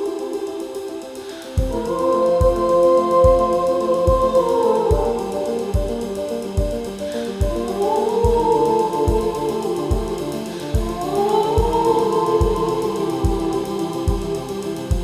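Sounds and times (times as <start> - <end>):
held melodic tones: 0.0 - 15.0
steady drum beat: 0.0 - 15.0.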